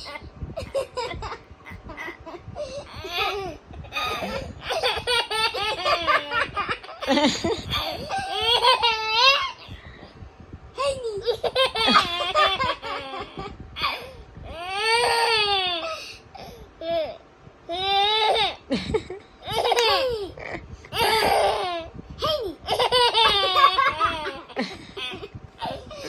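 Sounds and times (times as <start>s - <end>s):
young children laughing: 0.0s - 9.8s, 10.8s - 14.1s, 18.4s - 26.0s.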